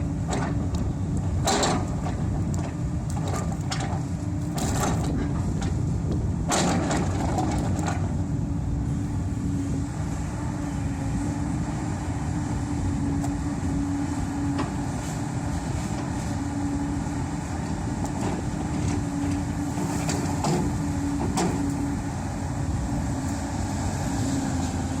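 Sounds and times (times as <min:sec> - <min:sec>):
diesel engine running: 0:00.0 - 0:25.0.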